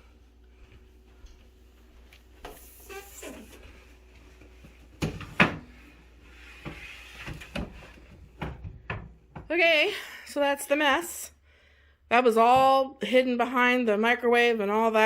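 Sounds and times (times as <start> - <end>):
microwave oven knocking and thumping: 5.0 - 5.7, 7.4 - 9.5.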